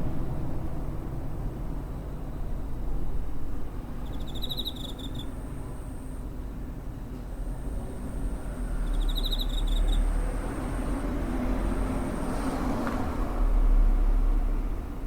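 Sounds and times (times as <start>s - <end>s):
cricket trilling: 4.0s - 6.2s, 7.5s - 12.5s
insect pulsed chirp: 4.0s - 6.2s, 7.9s - 12.2s.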